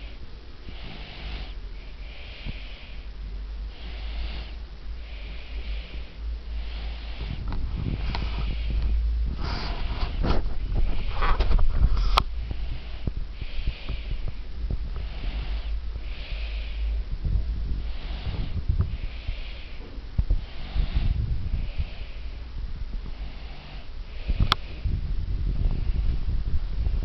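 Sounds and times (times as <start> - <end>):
baby snoring: 0.0 - 3.0, 3.7 - 4.6, 15.0 - 16.9, 17.8 - 19.8, 20.4 - 22.2, 23.1 - 24.5
low rumble: 0.0 - 27.0.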